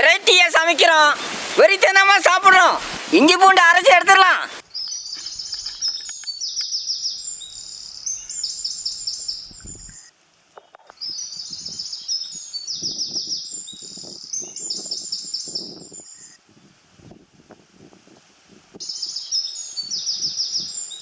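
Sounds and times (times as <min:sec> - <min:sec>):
songbird singing stuttering phrases: 0:00.0 - 0:10.1, 0:10.7 - 0:16.4.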